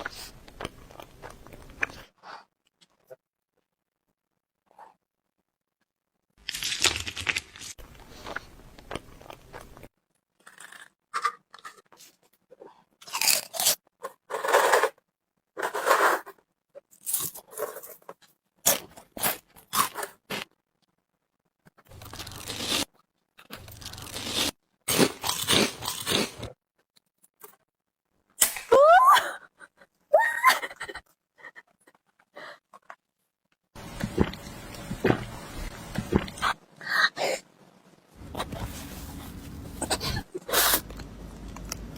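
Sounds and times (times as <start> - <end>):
crunchy bites and chewing: 6.4 - 11.8, 13.0 - 14.2, 21.9 - 26.6.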